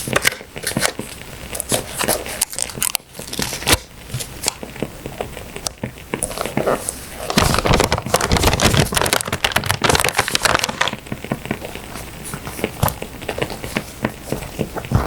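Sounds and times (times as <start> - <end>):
paper rustling and crinkling: 0.0 - 4.7, 6.2 - 15.0
wood fire crackles: 0.0 - 15.0.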